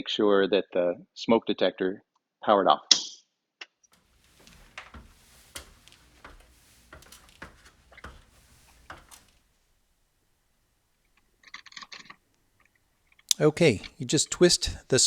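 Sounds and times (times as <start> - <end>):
light knocks and clicks: 4.0 - 9.8.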